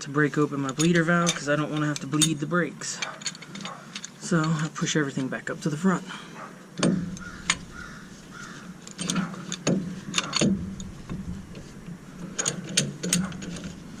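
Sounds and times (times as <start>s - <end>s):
steady low hum: 0.0s - 14.0s
metallic clinks and knocks: 0.6s - 4.7s, 8.8s - 14.0s.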